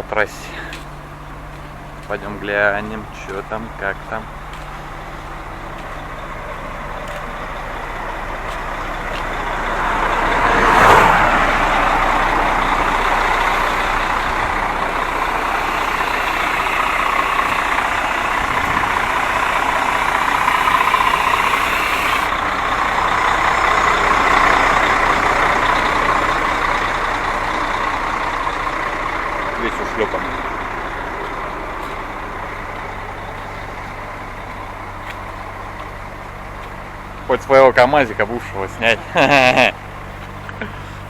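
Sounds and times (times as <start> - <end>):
highway traffic noise: 0.0 - 41.0
vehicle passing close by: 6.2 - 33.3.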